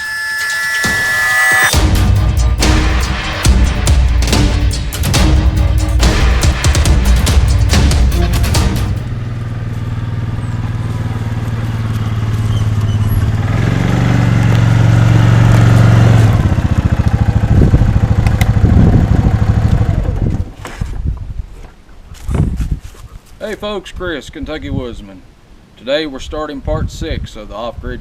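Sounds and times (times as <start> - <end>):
engine droning: 1.7 - 20.2.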